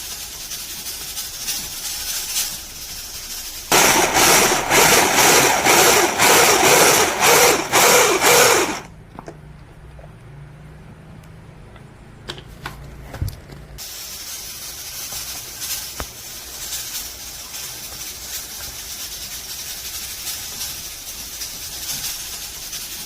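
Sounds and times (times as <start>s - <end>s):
leaves hissing in a pot: 0.0s - 8.8s, 13.8s - 23.0s.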